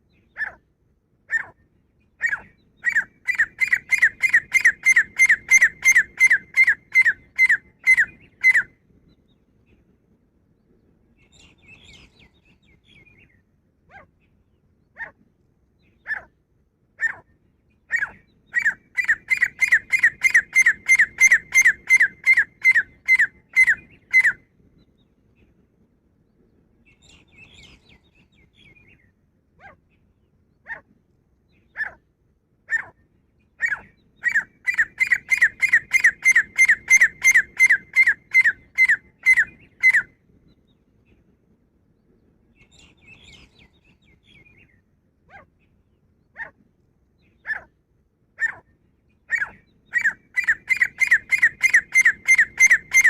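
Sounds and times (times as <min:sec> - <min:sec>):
soft bird chatter: 0:26.2 - 0:30.8.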